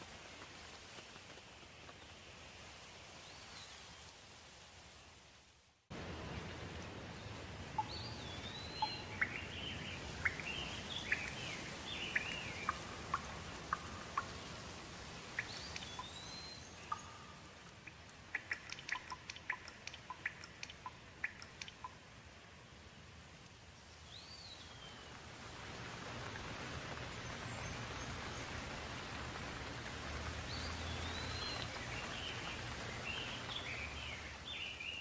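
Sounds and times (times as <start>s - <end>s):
steady rainforest hiss: 0.0s - 19.4s, 21.0s - 35.0s
sharp ticks or drips: 7.7s - 22.2s
birds chirping and whistling: 7.8s - 12.8s, 15.4s - 17.3s.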